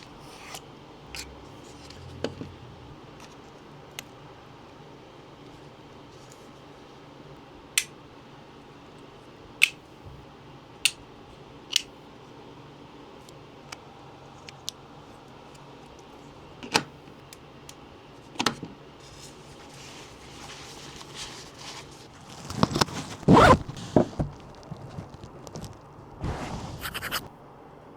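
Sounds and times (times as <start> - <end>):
scraping and rasping handling noise: 0.0 - 3.6, 19.0 - 27.3.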